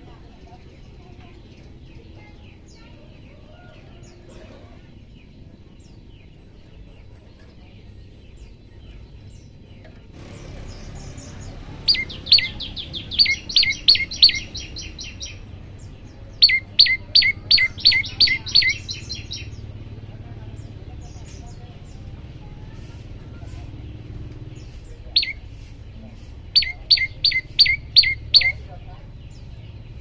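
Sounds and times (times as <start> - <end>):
faint low hum: 0.0 - 30.0
bird singing sharp high notes: 10.2 - 15.4, 16.3 - 19.6, 26.5 - 28.7.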